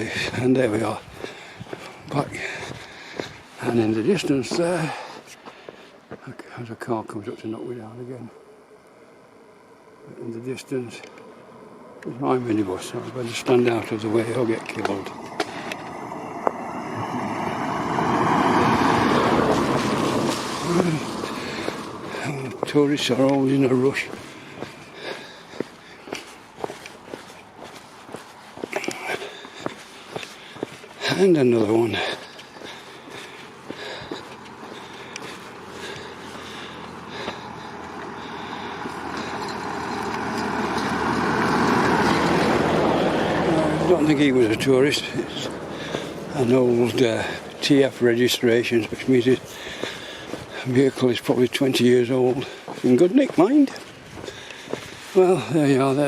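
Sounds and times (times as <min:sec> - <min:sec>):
car driving past: 0:11.2 - 0:25.4, 0:31.2 - 0:50.7
tyres hissing on wet road: 0:12.6 - 0:27.1, 0:31.0 - 0:56.0.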